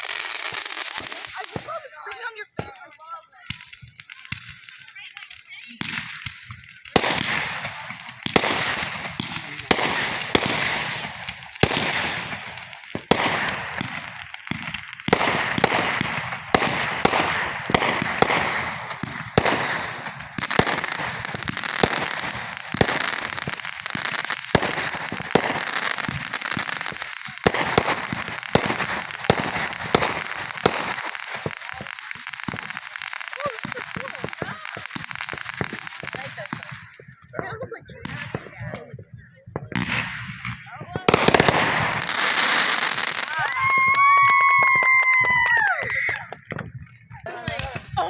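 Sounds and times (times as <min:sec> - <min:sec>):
fireworks bangs: 0:00.0 - 0:48.0
fireworks crackling: 0:00.0 - 0:48.0.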